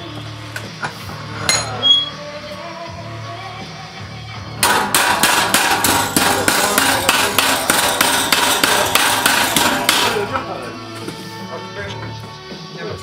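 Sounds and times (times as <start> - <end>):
hammer striking metal: 4.6 - 10.5.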